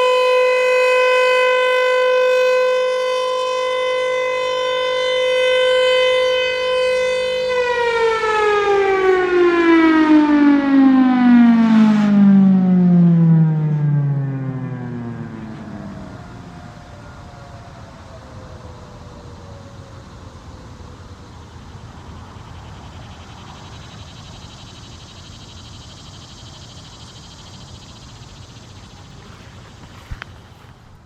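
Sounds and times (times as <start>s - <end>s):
siren winding down: 0.0s - 29.4s
high-pitched insect buzz: 21.2s - 30.3s.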